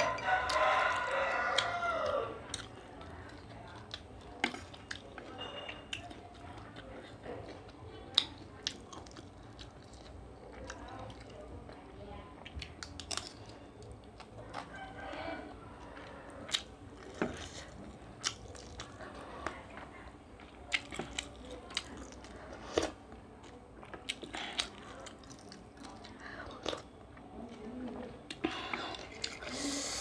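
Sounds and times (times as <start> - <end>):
person chewing and biting: 16.5 - 19.0.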